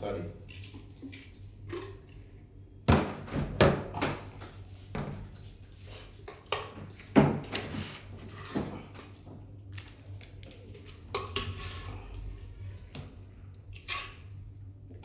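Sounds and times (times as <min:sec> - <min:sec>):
objects knocking and clattering: 0:06.6 - 0:09.4.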